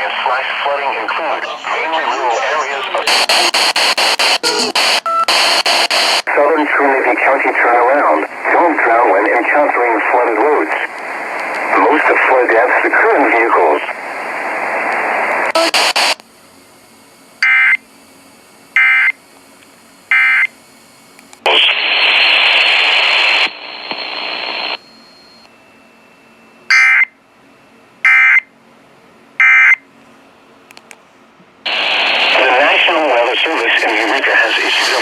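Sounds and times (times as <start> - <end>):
radio hiss: 0.0 - 16.2, 21.4 - 24.8, 31.6 - 35.0.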